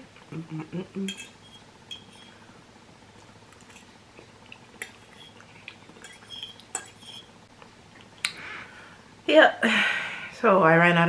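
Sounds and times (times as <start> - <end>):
utensils clinking against dish: 1.1 - 2.4, 4.8 - 7.3.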